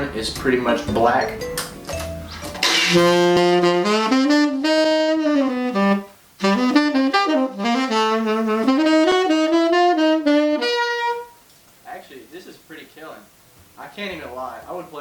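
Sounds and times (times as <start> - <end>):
saxophone melody: 0.7 - 11.4.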